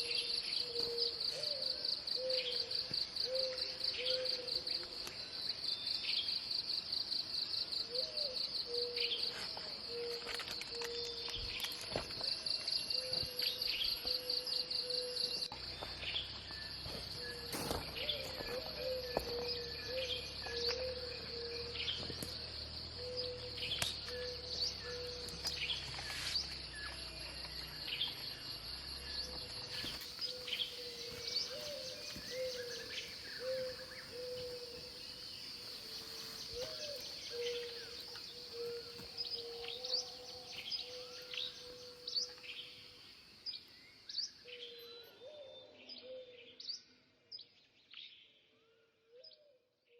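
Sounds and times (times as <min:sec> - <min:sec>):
insects trilling: 0:00.0 - 0:45.1
birds chirping: 0:08.6 - 0:45.4
low bird call: 0:29.2 - 0:35.2.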